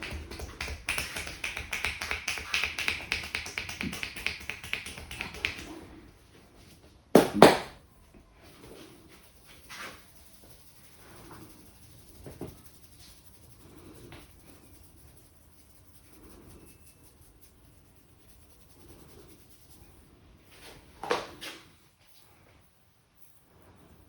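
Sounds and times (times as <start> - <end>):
hands tapping on head: 0.0 - 5.8
loud hand smack: 7.2 - 7.8.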